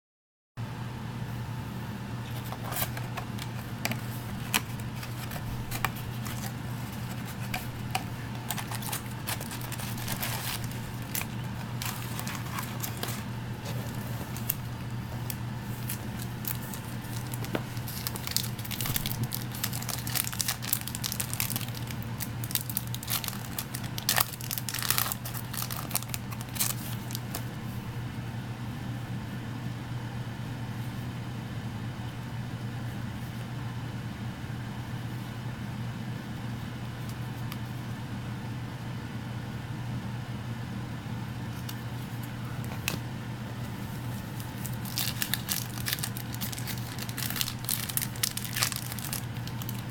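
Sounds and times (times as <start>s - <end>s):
steady low hum: 0.6s - 49.9s
plastic wrapping crinkling: 2.3s - 27.6s, 43.8s - 49.9s.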